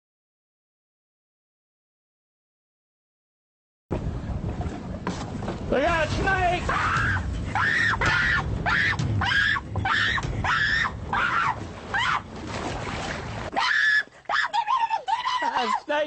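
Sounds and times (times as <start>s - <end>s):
boat motor rumble: 3.9s - 15.4s
person shrieking: 6.7s - 12.2s, 13.6s - 16.0s.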